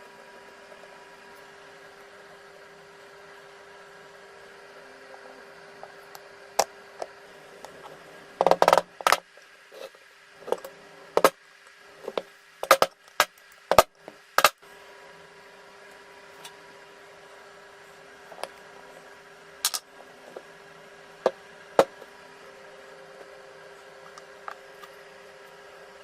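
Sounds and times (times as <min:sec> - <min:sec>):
faint steady hum: 0:00.0 - 0:26.0.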